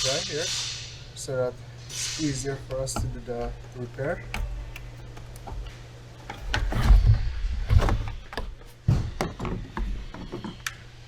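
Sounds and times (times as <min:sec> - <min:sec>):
plastic engine parts clunking: 0:02.7 - 0:10.8.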